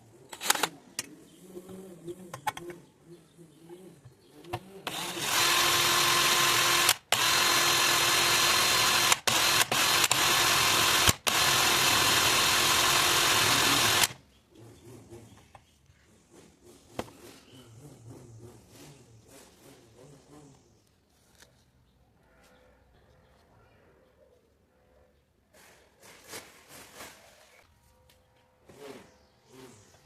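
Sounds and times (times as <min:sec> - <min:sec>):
power tool motor whining: 0:04.5 - 0:14.2.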